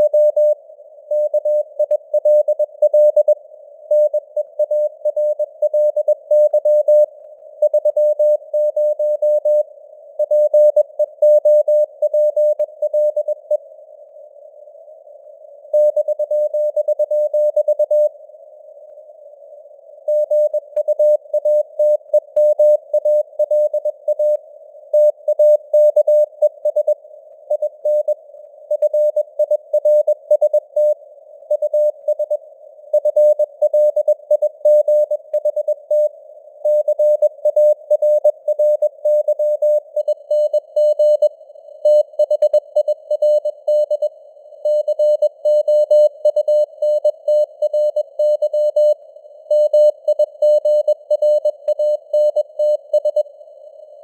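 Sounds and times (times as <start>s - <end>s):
soft radio hiss: 0.0s - 5.6s, 6.9s - 11.2s, 12.6s - 16.8s, 18.0s - 25.3s, 26.2s - 40.1s
morse code beeps: 36.7s - 41.3s, 41.9s - 53.3s.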